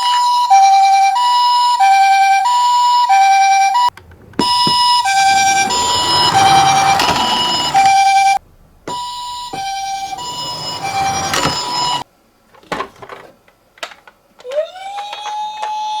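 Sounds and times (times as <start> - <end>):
rough rattling noise: 3.9 - 12.0.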